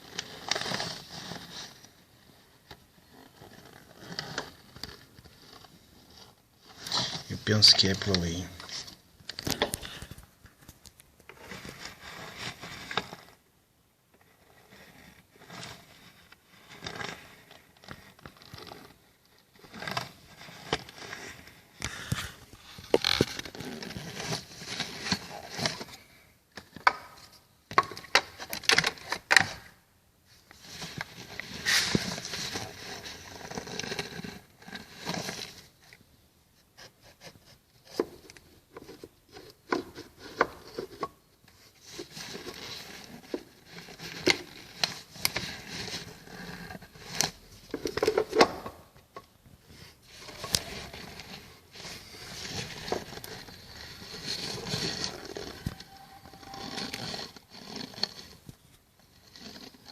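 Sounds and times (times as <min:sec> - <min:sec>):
scraping rustling and clicking: 0:36.7 - 0:59.9.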